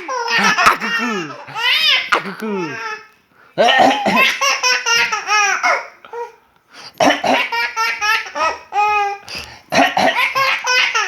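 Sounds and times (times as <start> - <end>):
small boy giggling: 0.0 - 3.0.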